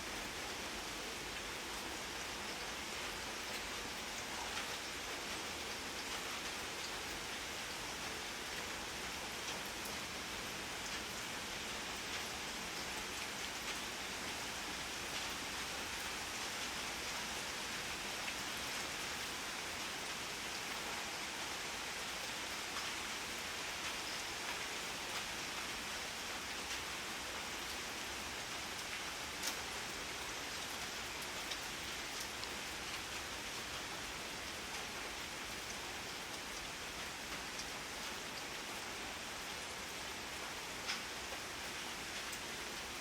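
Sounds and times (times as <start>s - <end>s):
steady rain hiss: 0.0s - 43.0s.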